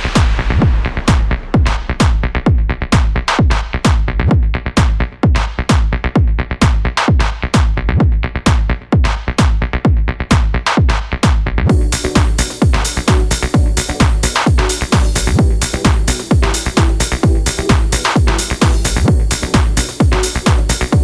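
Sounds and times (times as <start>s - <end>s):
electronic dance music: 10.4s - 21.0s.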